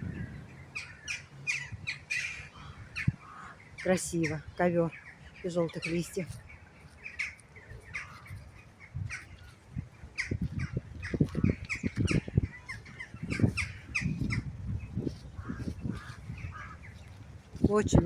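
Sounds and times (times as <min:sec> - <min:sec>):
crows cawing: 0:00.8 - 0:04.4, 0:07.0 - 0:14.5, 0:15.4 - 0:17.2.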